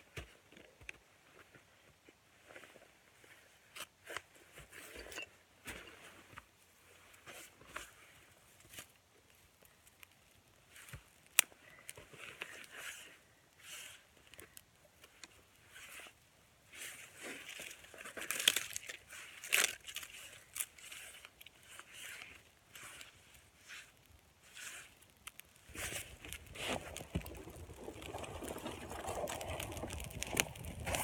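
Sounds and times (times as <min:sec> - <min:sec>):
dry grass and bark rustling: 0:07.1 - 0:31.0.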